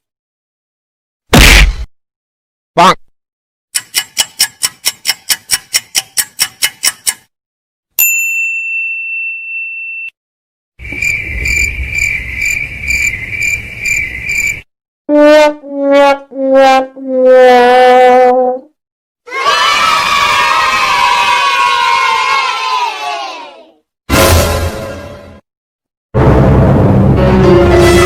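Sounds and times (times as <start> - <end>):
rapid ticking clicks: 3.8 - 7.3.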